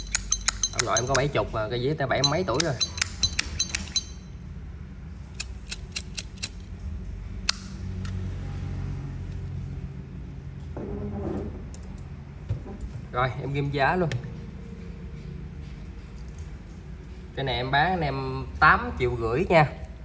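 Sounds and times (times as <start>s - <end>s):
lighter metal clicks: 7.4s - 8.2s.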